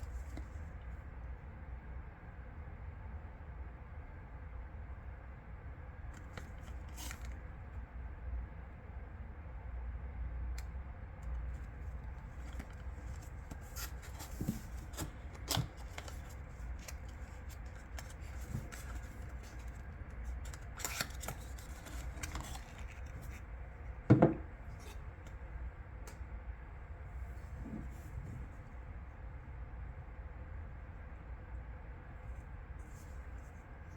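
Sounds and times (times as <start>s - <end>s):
packaging rustling: 12.4s - 23.4s.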